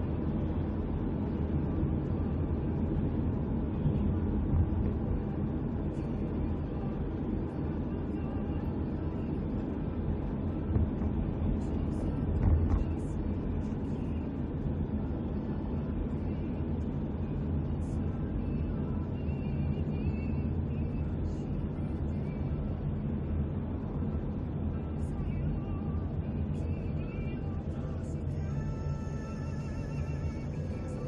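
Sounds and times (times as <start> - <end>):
car cabin rumble: 0.0 - 17.1.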